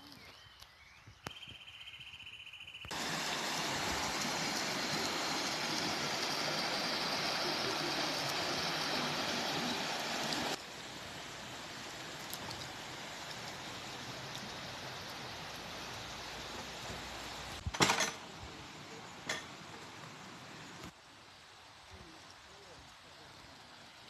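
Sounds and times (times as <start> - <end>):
stream water rushing: 2.9 - 17.6.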